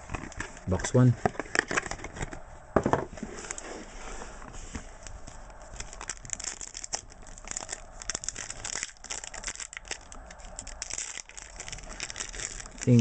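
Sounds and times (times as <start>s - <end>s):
card packaging crinkling: 5.0s - 13.0s.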